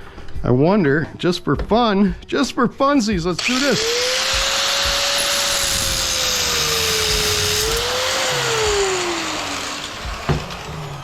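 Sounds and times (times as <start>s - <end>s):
electric power tool motor: 3.4s - 11.0s.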